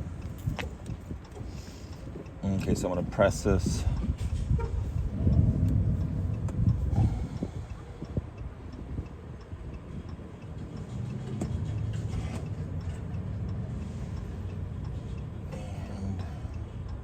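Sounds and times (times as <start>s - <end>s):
hazard light flasher ticking: 0.0s - 7.0s.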